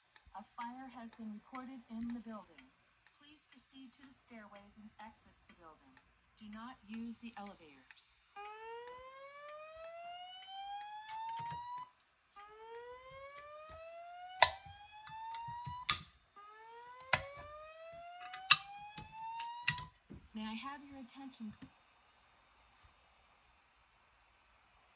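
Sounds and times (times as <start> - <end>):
sharp clicks: 0.0 - 16.1, 17.0 - 17.5, 18.2 - 19.9.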